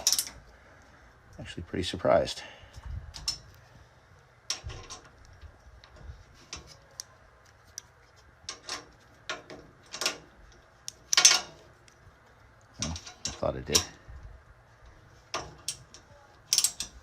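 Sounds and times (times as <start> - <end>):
hand ratchet clicking: 15.3 - 17.0.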